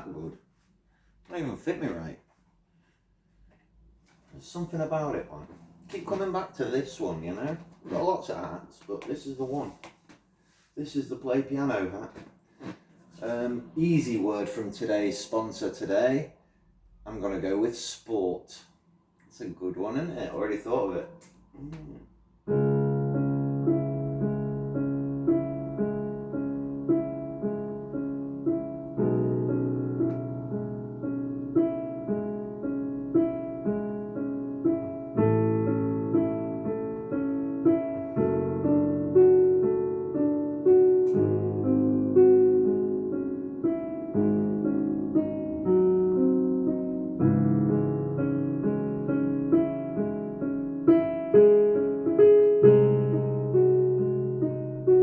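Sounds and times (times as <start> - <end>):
slow piano piece: 20.6 - 55.0.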